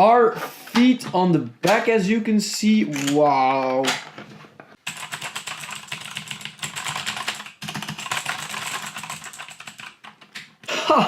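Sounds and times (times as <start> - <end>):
mechanical keyboard clicking: 4.9 - 10.5.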